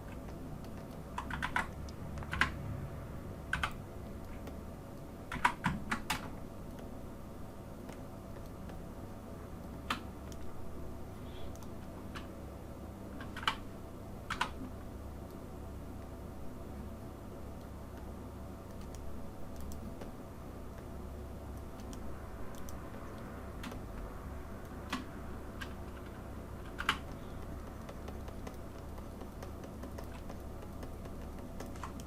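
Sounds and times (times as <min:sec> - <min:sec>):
steady low hum: 0:00.0 - 0:32.0
keyboard keys pressed: 0:24.9 - 0:32.0.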